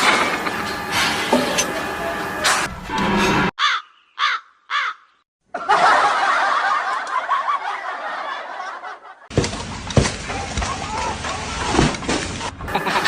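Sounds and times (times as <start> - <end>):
people laughing together: 5.5 - 9.8, 12.7 - 13.0.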